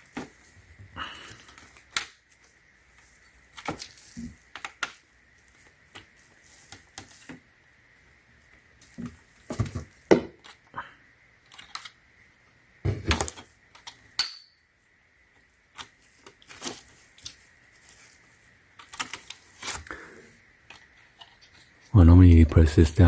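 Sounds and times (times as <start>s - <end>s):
plastic clicks and rattles: 11.4s - 12.0s, 18.8s - 19.4s.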